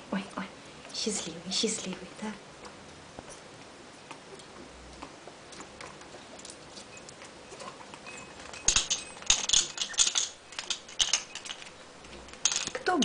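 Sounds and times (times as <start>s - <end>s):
parrot clicking and rattling: 5.8s - 13.0s.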